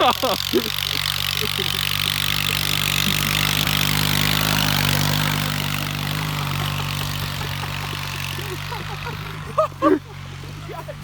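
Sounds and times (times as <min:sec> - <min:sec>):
lawn mower engine running: 0:00.0 - 0:11.0.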